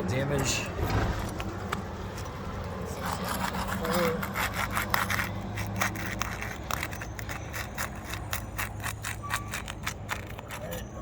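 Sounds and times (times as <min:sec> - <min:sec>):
tool scraping roof shingles: 0:03.0 - 0:11.0.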